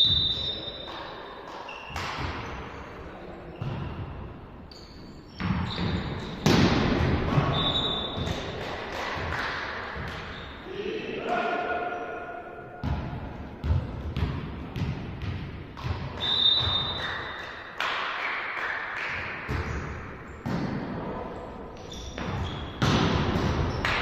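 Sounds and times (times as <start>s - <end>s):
shoe squeaks: 0.0s - 1.0s, 1.6s - 2.8s, 4.7s - 6.4s, 7.5s - 8.2s, 10.3s - 10.6s, 16.2s - 17.0s, 21.8s - 22.8s
volleyball hits and thuds: 5.4s - 10.4s, 12.8s - 17.0s, 19.2s - 21.1s, 22.2s - 24.0s.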